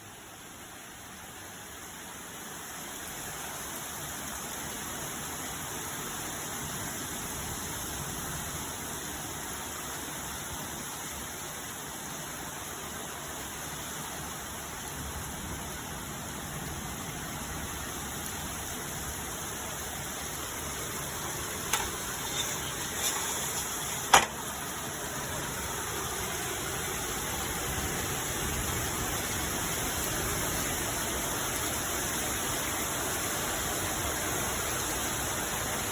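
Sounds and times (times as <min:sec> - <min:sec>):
rain rushing: 0:00.0 - 0:35.9.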